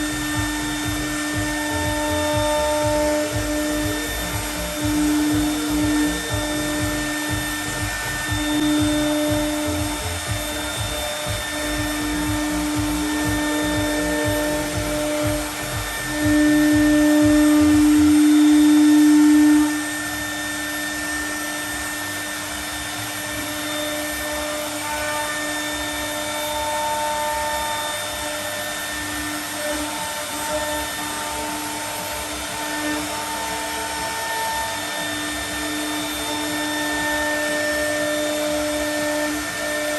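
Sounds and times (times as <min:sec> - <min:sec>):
router spindle whining: 0:00.0 - 0:39.9
low rumble: 0:00.1 - 0:17.9.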